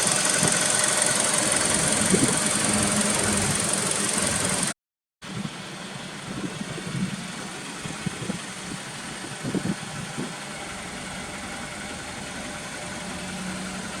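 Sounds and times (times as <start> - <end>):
car engine idling: 0.0 - 4.7, 5.4 - 14.0.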